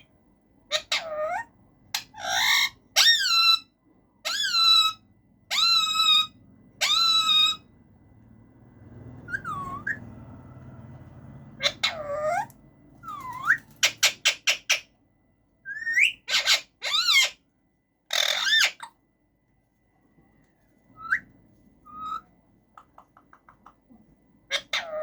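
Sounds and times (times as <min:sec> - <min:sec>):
parakeet whistling and calling: 0:00.7 - 0:07.7, 0:09.2 - 0:10.2, 0:11.6 - 0:14.9, 0:15.6 - 0:17.4, 0:18.1 - 0:19.0, 0:20.9 - 0:22.3, 0:24.5 - 0:25.0.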